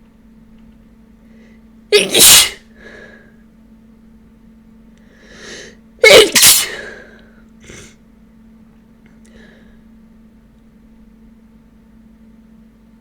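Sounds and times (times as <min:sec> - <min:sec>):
person sneezing: 0:01.9 - 0:02.7, 0:06.0 - 0:08.0
sharp inhale: 0:05.1 - 0:05.8.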